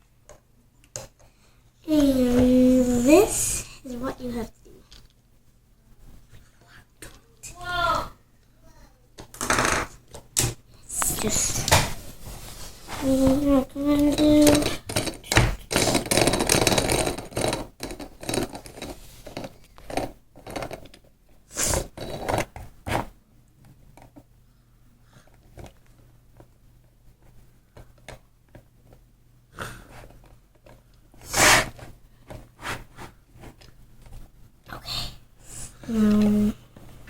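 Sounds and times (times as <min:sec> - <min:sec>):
modeling clay and plastic molds handled: 0:10.0 - 0:24.4, 0:25.1 - 0:34.8.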